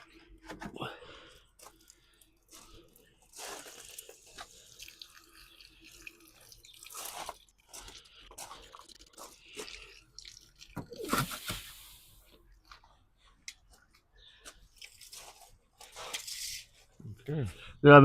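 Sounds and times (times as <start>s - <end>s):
clicks and crunching rustles: 12.6s - 17.0s.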